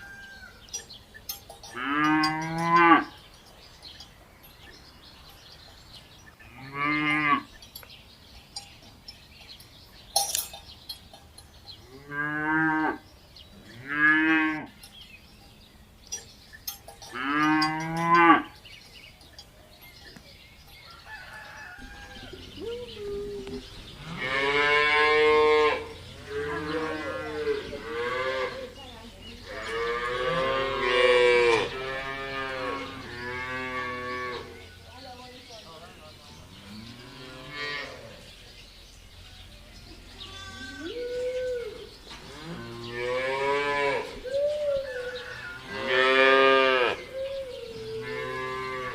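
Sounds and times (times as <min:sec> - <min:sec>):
cattle mooing: 0:22.2 - 0:28.8, 0:29.4 - 0:34.7, 0:40.2 - 0:44.2, 0:44.9 - 0:47.1.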